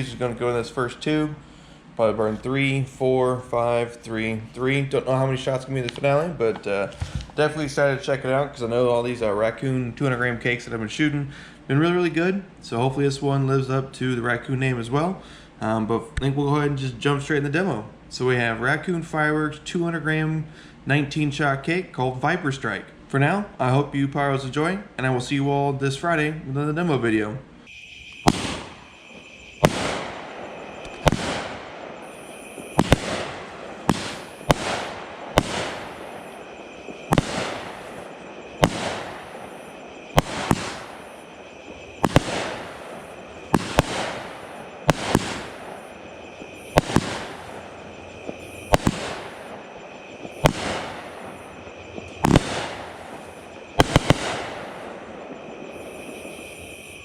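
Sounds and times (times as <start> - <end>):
fireworks bangs: 0.0 - 1.3, 2.0 - 9.4, 27.7 - 57.0.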